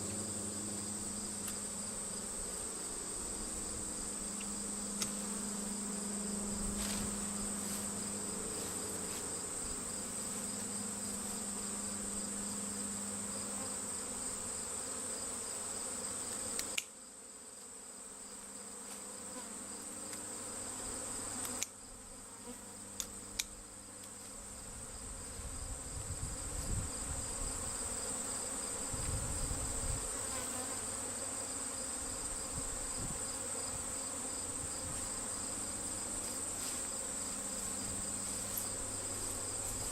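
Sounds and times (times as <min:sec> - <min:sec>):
bees buzzing: 0:00.0 - 0:39.9.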